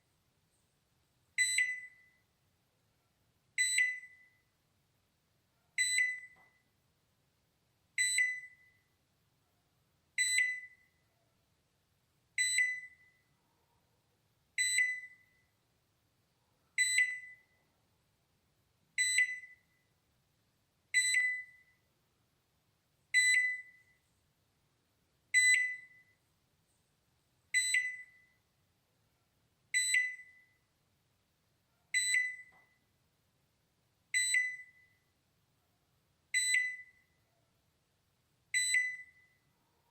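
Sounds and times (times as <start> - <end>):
microwave alarm beeps: 1.4 - 2.3, 3.6 - 4.5, 5.8 - 6.7, 8.0 - 8.9, 10.2 - 11.0, 12.4 - 13.3, 14.6 - 15.5, 16.8 - 17.6, 19.0 - 19.9, 20.9 - 21.8, 23.1 - 24.0, 25.3 - 26.2, 27.5 - 28.4, 29.7 - 30.6, 31.9 - 32.8, 34.1 - 35.1, 36.3 - 37.2, 38.5 - 39.5.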